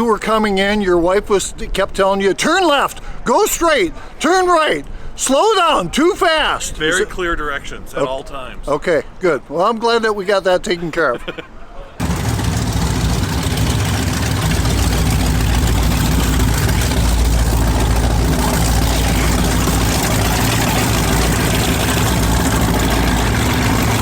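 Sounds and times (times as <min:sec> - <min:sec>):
powerboat engines idling: 0:12.0 - 0:24.0.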